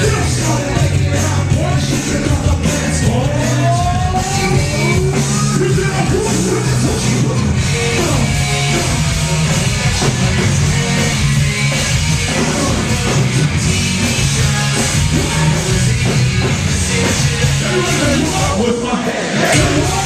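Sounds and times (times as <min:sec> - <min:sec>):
steady bass line: 0:00.0 - 0:18.8, 0:19.4 - 0:20.0
electric guitars: 0:00.0 - 0:20.0
person singing: 0:12.2 - 0:20.0.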